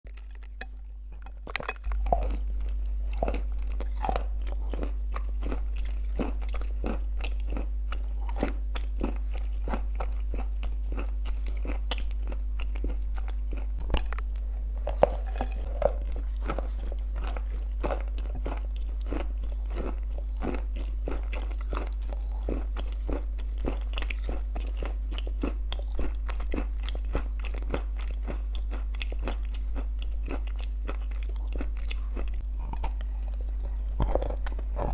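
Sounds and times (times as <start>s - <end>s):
crisp crunching and chewing: 0.1s - 34.9s.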